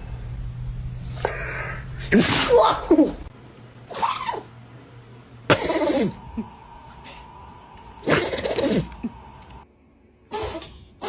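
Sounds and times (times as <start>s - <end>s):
dog sneezing: 2.1s - 3.1s.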